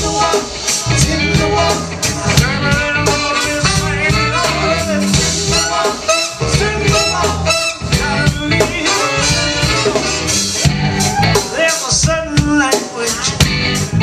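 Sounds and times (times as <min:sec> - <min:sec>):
horn section: 0:00.0 - 0:11.8
live band playing upbeat song: 0:00.0 - 0:14.0.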